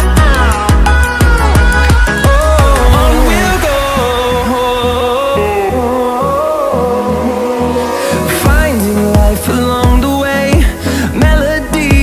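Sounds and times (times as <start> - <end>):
sustained bass: 1.0 - 9.1
gliding synth lead: 2.4 - 8.0.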